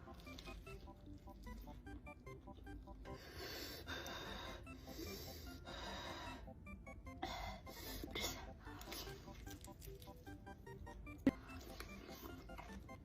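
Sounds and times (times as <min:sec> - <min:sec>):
light background music: 0:00.0 - 0:13.0
breathy eating mouth noises: 0:08.0 - 0:10.2.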